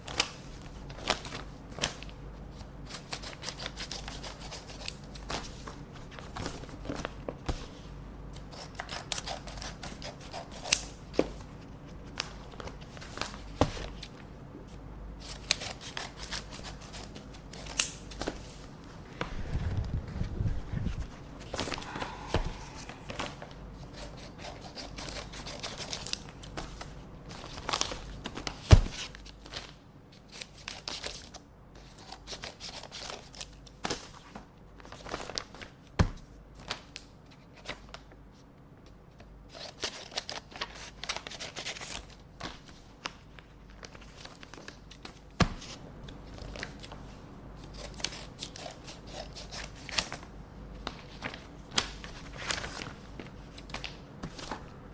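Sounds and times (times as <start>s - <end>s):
scissors snipping paper: 2.9s - 5.3s, 8.4s - 11.0s, 15.2s - 18.2s, 23.9s - 26.3s, 47.6s - 50.2s
paper tearing and rustling: 50.9s - 54.6s.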